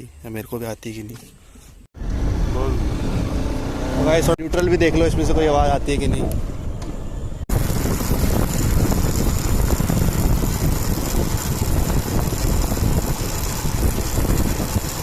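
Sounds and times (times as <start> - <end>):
motorcycle road and drivetrain noise: 1.9 - 15.0
wind rushing over microphone: 4.3 - 15.0.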